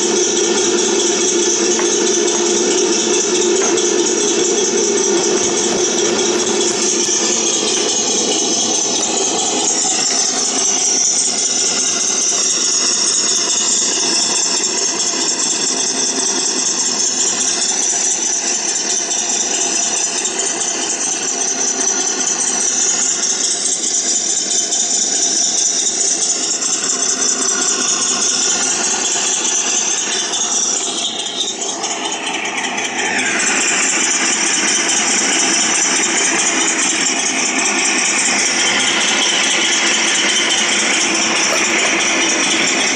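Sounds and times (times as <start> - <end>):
tank engine running with rattle: 0.0 - 42.9.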